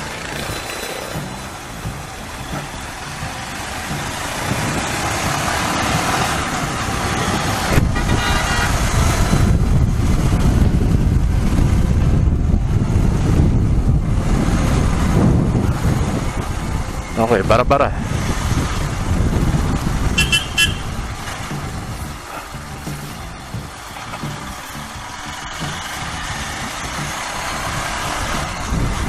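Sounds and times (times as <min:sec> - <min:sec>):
motorcycle engine: 0:00.0 - 0:29.0
road noise: 0:00.0 - 0:29.0
wind buffeting microphone: 0:00.0 - 0:29.0
horn toot: 0:07.7 - 0:09.1, 0:20.1 - 0:21.0.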